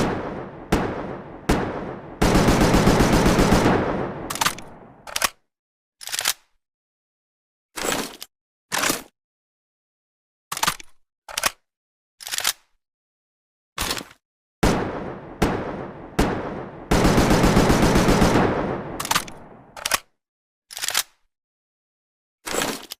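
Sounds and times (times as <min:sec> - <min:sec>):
rifle single shots: 0:00.0 - 0:05.1, 0:14.6 - 0:19.8.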